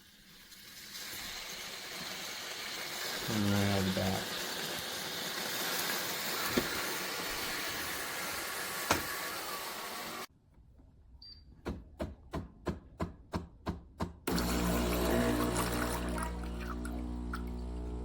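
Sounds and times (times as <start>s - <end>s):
espresso machine humming: 14.3s - 18.0s.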